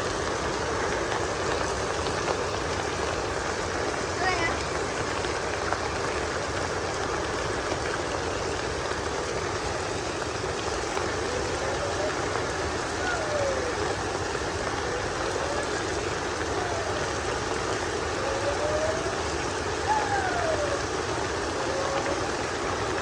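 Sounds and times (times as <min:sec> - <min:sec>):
heavy rain: 0:00.0 - 0:23.0
distant voices calling out: 0:10.8 - 0:23.0.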